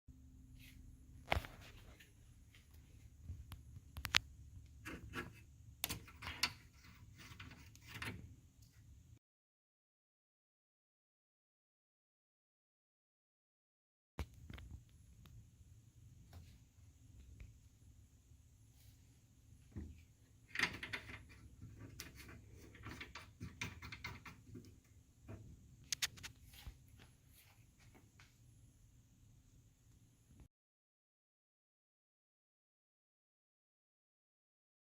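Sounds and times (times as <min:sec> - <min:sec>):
small clicks and taps: 0:03.4 - 0:06.5.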